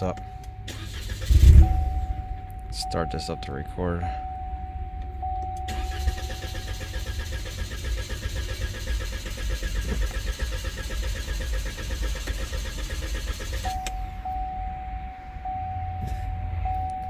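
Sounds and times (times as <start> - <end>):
starter cranking car engine: 0.7 - 1.9, 5.7 - 14.0.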